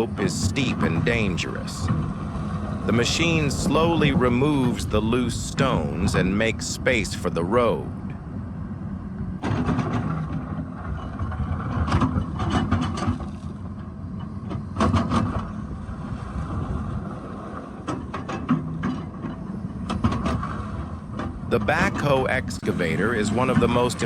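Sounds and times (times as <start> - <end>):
excavator diesel engine running: 0.0 - 1.9, 2.8 - 8.1.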